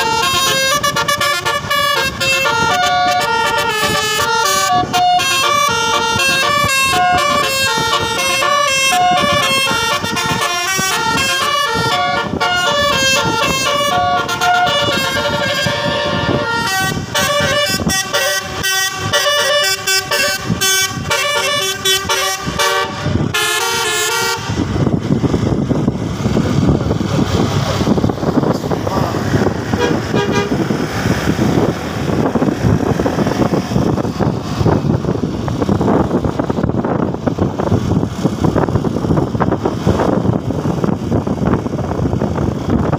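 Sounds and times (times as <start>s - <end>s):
multi-tone bus horn melodies: 0.0s - 24.8s, 29.6s - 31.0s
loud steady rushing noise: 0.0s - 42.9s.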